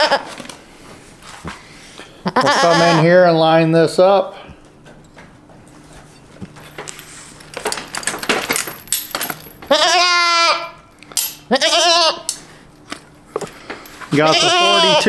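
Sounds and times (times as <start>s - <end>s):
goat bleating: 0.0s - 0.3s, 2.2s - 3.1s, 9.7s - 10.8s, 11.5s - 12.3s, 14.1s - 15.0s
handling clicks and rattles: 6.5s - 9.7s.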